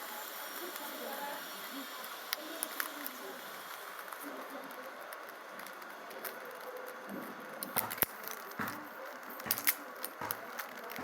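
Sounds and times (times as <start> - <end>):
plastic puzzle cube clicking: 2.0 - 11.0.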